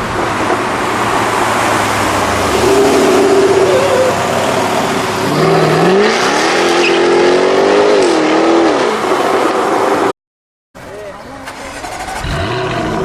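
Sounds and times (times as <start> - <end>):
car engine revving hard: 1.1 - 10.1, 11.7 - 13.0.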